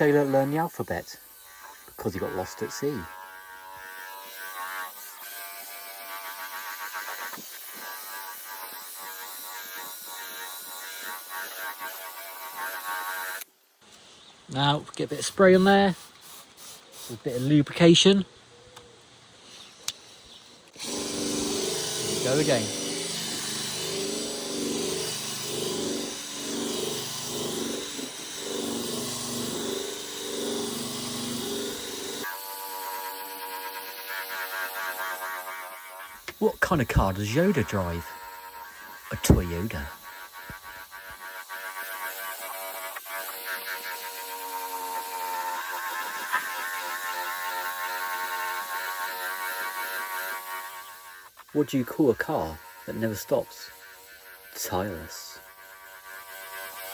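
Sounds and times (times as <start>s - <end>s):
electric polisher motor: 19.9s - 56.9s
polishing machine buzzing whine: 20.2s - 32.6s.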